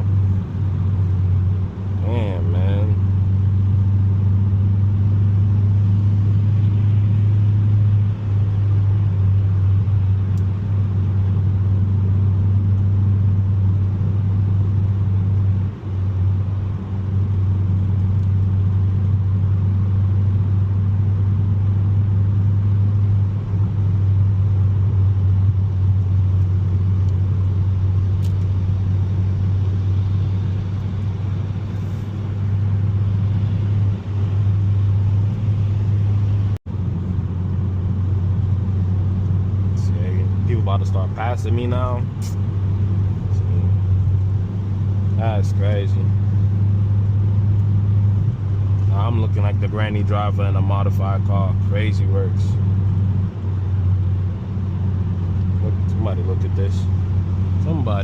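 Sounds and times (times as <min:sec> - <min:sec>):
car engine and road noise: 0:00.0 - 0:58.0.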